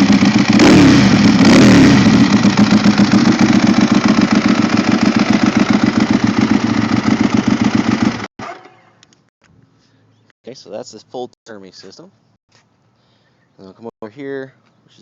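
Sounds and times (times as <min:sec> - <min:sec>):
motorcycle engine revving and idling: 0:00.0 - 0:08.7.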